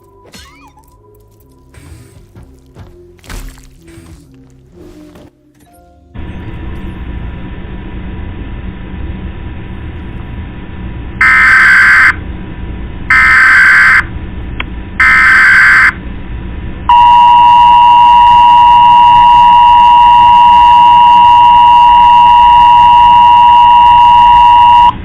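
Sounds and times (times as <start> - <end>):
two-tone attention signal: 16.9 - 24.9.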